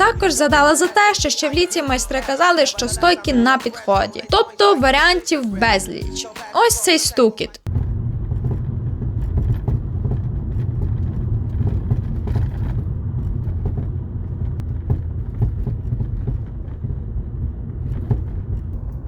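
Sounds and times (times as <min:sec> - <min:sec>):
car road rumble: 0:07.6 - 0:19.0.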